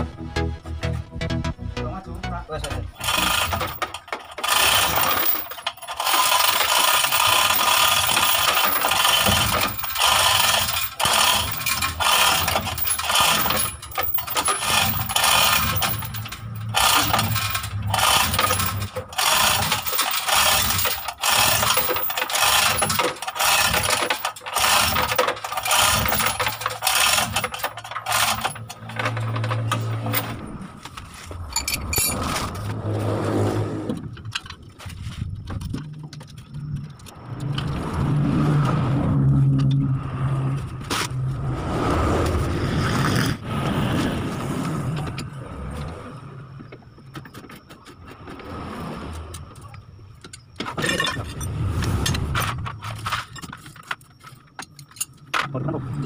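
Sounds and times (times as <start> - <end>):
metallic clicking and rattling: 2.6 - 32.6.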